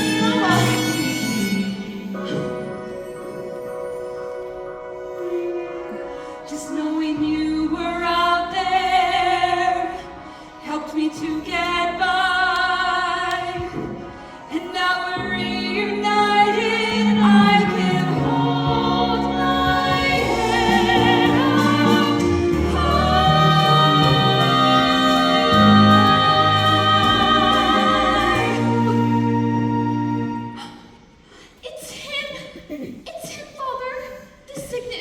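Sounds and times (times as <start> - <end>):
stage musical singing with vibrato: 0.0 - 31.2
instrumental accompaniment: 11.2 - 30.7.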